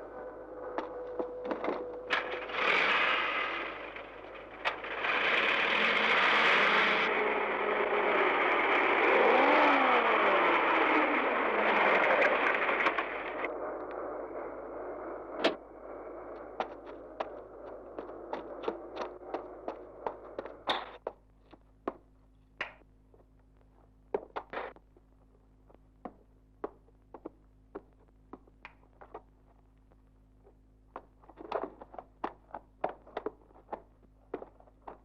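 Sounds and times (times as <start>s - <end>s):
faint steady hum: 0.0s - 9.4s, 10.0s - 35.0s
car engine and road noise: 0.0s - 21.8s.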